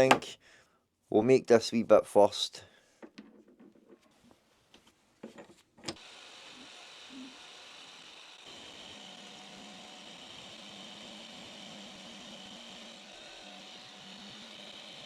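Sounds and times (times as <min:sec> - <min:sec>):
handling knocks and clicks: 0:04.7 - 0:06.0
electric motor humming: 0:05.9 - 0:15.0.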